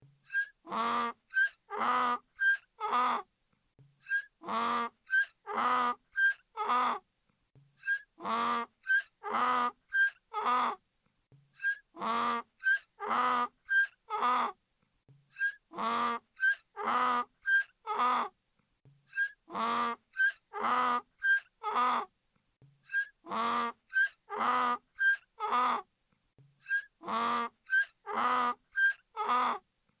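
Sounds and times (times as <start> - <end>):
donkey braying: 0.3 - 3.2, 4.1 - 7.0, 7.8 - 10.8, 11.6 - 14.6, 15.4 - 18.3, 19.2 - 22.1, 22.9 - 25.8, 26.7 - 29.6.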